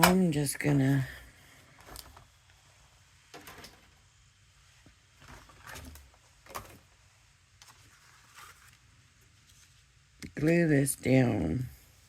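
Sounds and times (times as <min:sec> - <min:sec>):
paper rustling: 0:07.6 - 0:09.9.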